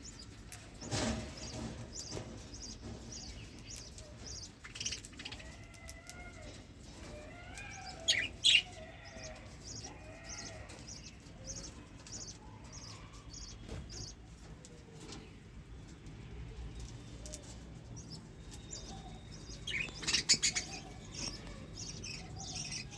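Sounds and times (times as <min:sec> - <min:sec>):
budgerigars chattering: 0:07.7 - 0:14.1, 0:18.0 - 0:22.9.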